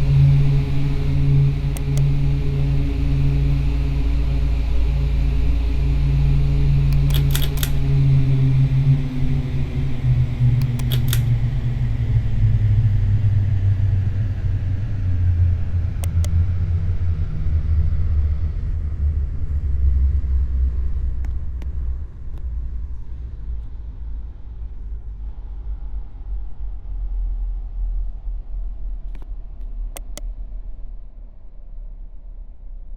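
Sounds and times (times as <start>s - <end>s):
ceiling fans humming: 0.0s - 16.6s
sharp clicks: 6.9s - 7.9s, 10.6s - 11.3s, 16.0s - 16.4s, 30.0s - 30.3s.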